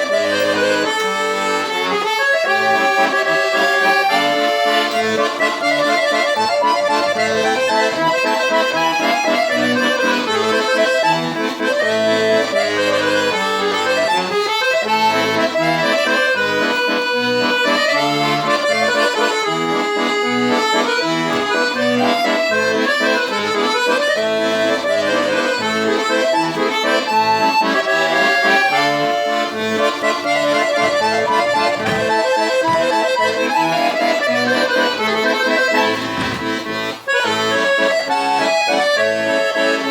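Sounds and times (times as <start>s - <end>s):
accordion playing a tune: 0.0s - 39.9s.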